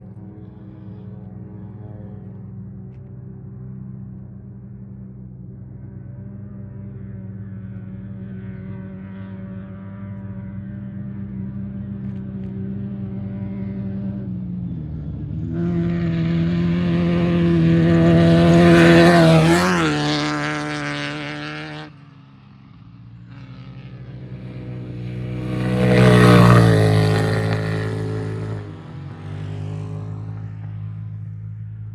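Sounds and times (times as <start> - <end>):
engine drone: 0.0 - 31.9
race vehicle passing by: 6.5 - 31.9.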